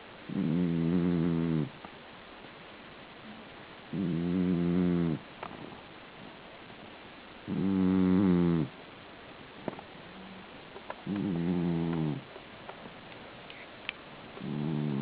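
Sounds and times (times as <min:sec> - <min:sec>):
cat snoring: 0:00.3 - 0:01.8, 0:03.9 - 0:05.2, 0:07.5 - 0:08.8, 0:11.0 - 0:12.3, 0:14.4 - 0:15.0.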